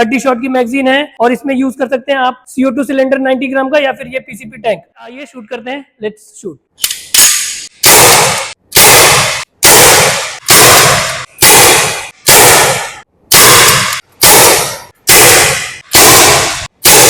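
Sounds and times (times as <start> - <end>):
pellet rifle shots: 7.2 - 17.0.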